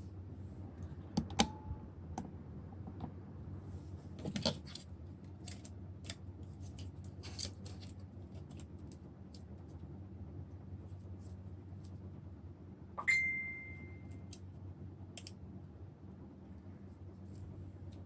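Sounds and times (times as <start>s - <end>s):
low electrical hum: 0.0s - 18.0s.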